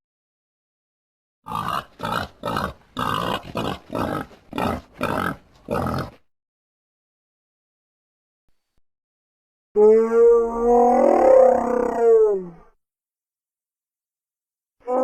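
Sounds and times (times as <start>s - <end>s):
rough creature calls: 9.8s - 12.7s.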